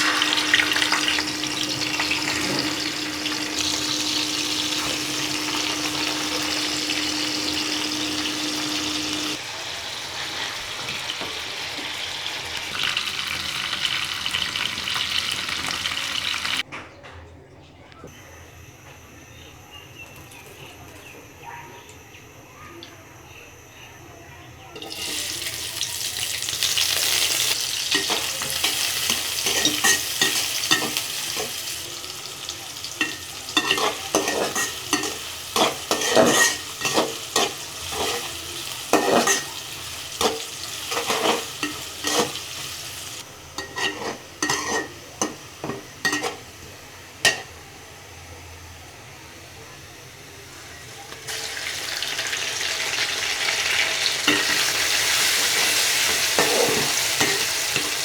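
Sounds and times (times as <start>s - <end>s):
food sizzling in hot oil: 0.0s - 16.6s, 24.8s - 48.2s, 50.3s - 58.0s
spatula scraping a pan: 33.1s - 39.6s, 40.2s - 42.6s, 43.6s - 46.4s, 55.6s - 58.0s.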